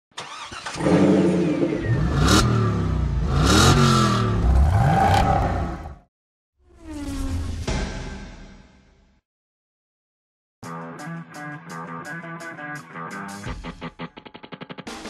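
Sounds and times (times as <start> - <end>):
car engine revving: 0.3 - 6.0.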